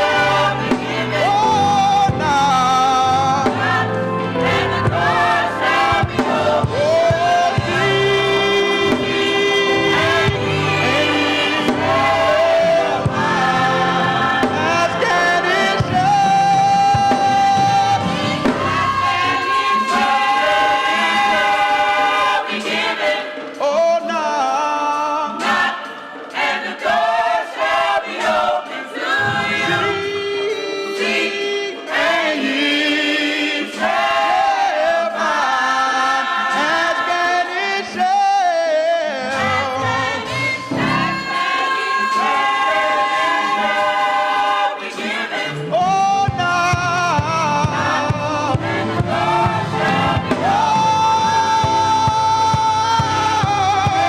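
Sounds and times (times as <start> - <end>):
low accompaniment: 0.0 - 20.6
church choir singing gospel: 0.0 - 54.0.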